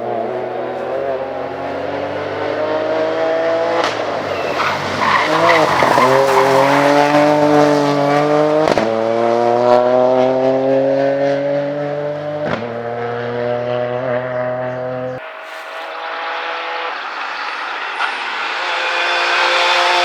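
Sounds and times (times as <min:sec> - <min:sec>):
rally car engine revving: 0:00.0 - 0:20.0
tyres squealing: 0:03.7 - 0:08.2, 0:15.2 - 0:20.0.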